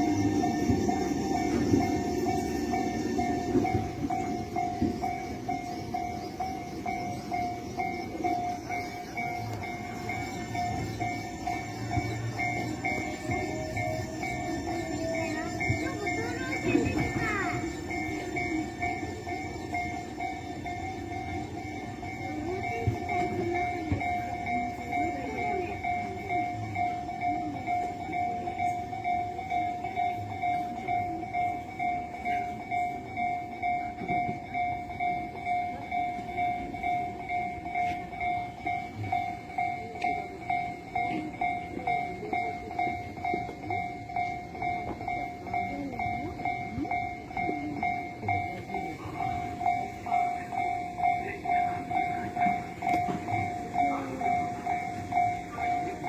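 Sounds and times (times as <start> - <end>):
level crossing warning bell: 0.0 - 56.0.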